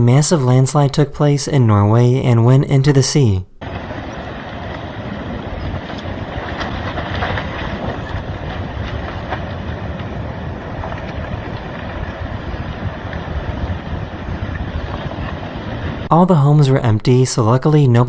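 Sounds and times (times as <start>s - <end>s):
landslide low rumble: 0.0s - 18.0s
sharp cracks: 3.6s - 16.1s.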